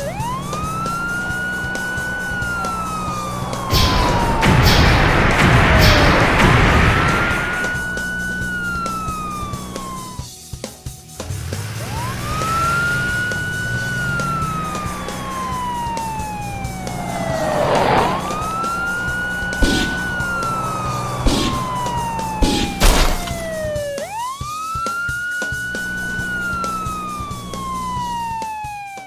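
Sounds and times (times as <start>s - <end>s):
wailing siren: 0.0s - 10.3s, 11.6s - 29.0s
sharp knocks: 22.7s - 23.5s.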